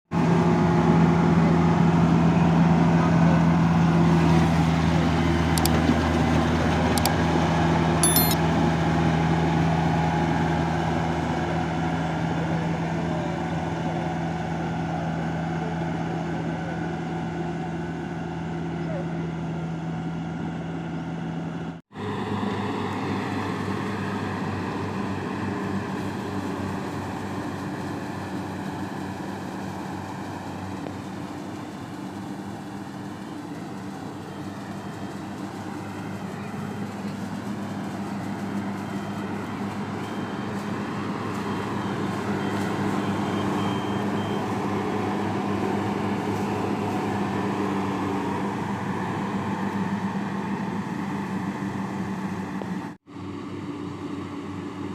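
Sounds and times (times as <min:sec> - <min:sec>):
farm machinery engine running: 0:19.3 - 0:54.9.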